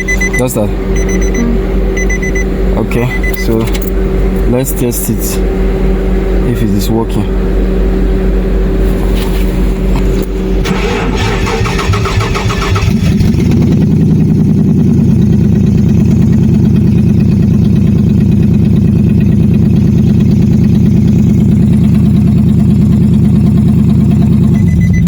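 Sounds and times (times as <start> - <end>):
engine cranking on starter motor: 10.0 - 13.7.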